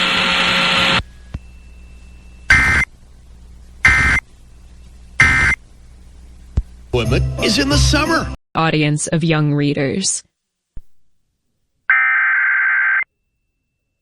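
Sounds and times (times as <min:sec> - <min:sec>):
digital data squawks: 0:02.5 - 0:02.9, 0:03.8 - 0:04.2, 0:05.2 - 0:05.6.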